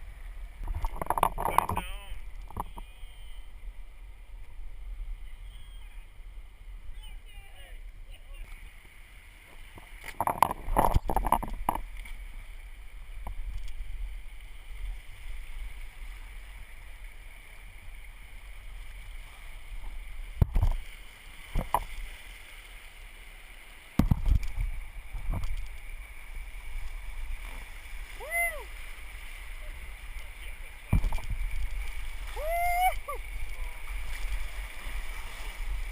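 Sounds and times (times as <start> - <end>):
river water rushing and splashing: 0.0 - 35.9
sharp knocks on oar: 0.6 - 2.9, 9.7 - 12.2, 20.4 - 20.8, 21.5 - 21.9, 24.0 - 25.7, 30.9 - 31.6.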